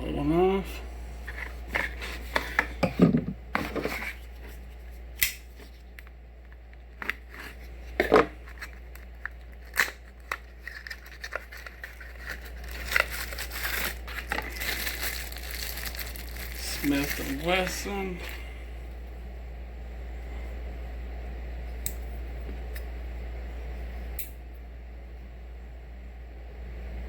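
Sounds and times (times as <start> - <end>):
packaging scrapes and rustles: 7.0 - 17.8.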